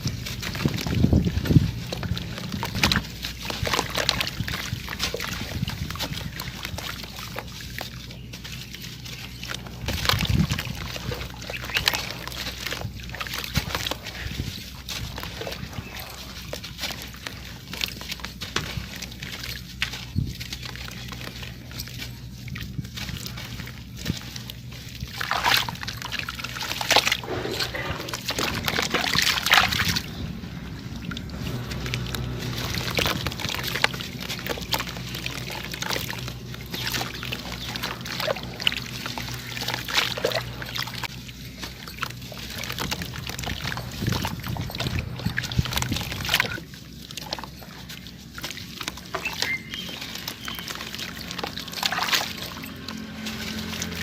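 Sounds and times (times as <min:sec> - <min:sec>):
heavy crunches: 0:00.0 - 0:47.6
gritty chunks crumbling: 0:00.0 - 0:54.0.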